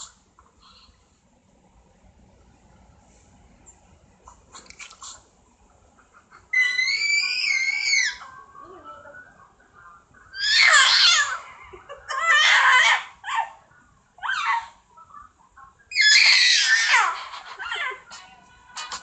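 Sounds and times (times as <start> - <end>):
dog whining and yowling: 6.5 - 8.3, 12.1 - 13.6, 14.2 - 14.8, 15.9 - 18.0.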